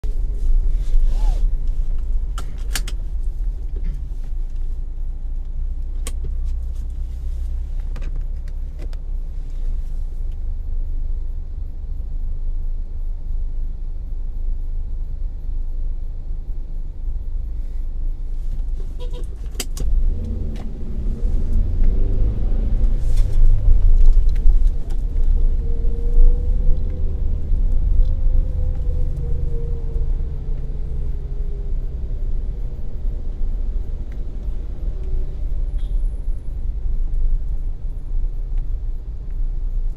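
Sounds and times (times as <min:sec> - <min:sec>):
car engine and road noise: 0:00.0 - 0:39.9.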